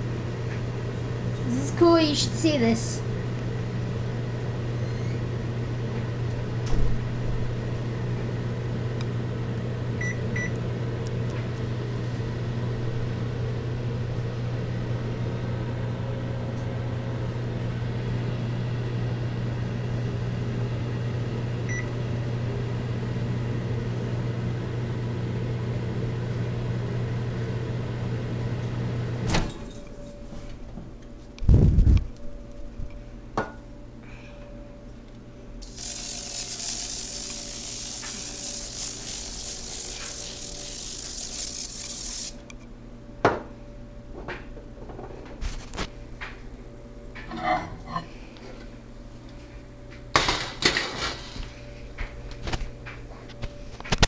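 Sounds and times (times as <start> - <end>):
microwave oven humming: 0.0 - 54.0
microwave shutting off click: 27.8 - 30.0.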